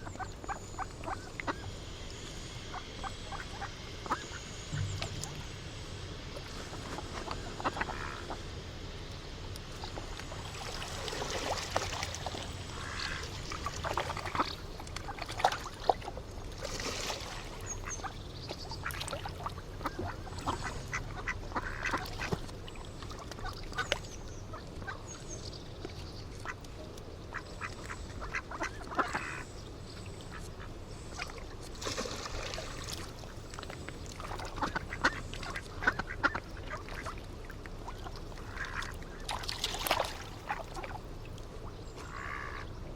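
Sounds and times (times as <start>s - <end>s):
ducks quacking: 2.7s - 5.4s, 7.3s - 8.4s, 12.7s - 13.3s, 19.8s - 22.4s, 27.3s - 29.5s, 34.4s - 37.2s, 38.4s - 39.0s, 42.0s - 42.8s.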